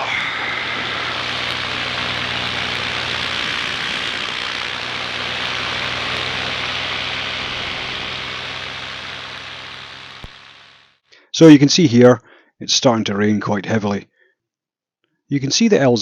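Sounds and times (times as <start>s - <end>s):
rush of airflow: 0.0s - 10.3s
paramotor engine drone: 0.0s - 11.0s.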